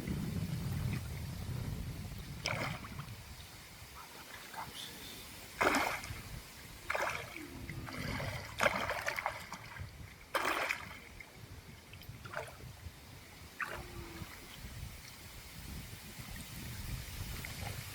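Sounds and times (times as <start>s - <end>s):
low steady rumble: 0.0s - 3.6s
water splashing: 2.2s - 3.3s, 4.0s - 12.7s, 13.5s - 17.9s.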